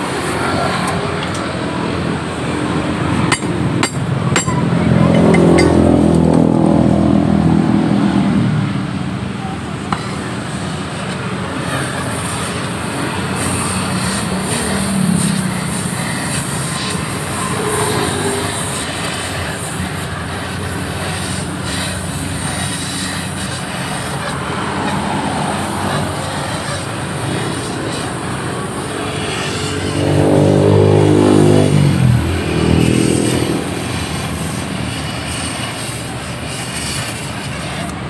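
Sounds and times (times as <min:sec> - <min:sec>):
vehicle engine passing by: 0:00.0 - 0:09.8, 0:11.6 - 0:36.8
road traffic noise: 0:00.0 - 0:38.0.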